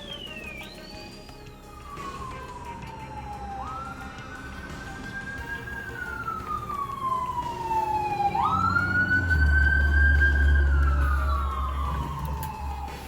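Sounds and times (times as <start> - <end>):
emergency siren wailing: 0.0 - 13.0
deep engine rumble: 3.3 - 13.0.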